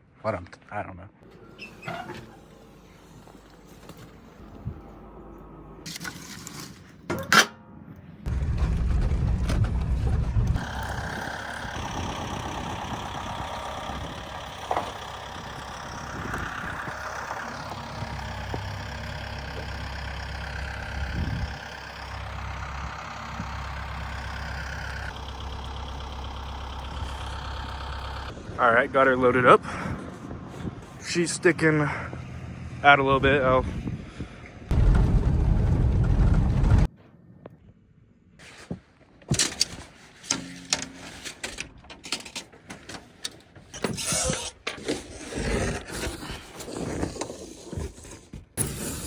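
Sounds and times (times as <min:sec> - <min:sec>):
vehicle engine starting and running: 0:01.2 - 0:06.7, 0:08.2 - 0:33.6, 0:34.3 - 0:36.9.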